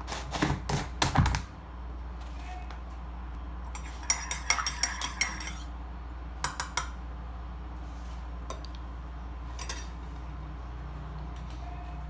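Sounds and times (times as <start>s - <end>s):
cutlery clinking against dishes: 3.8s - 5.7s, 9.6s - 10.0s.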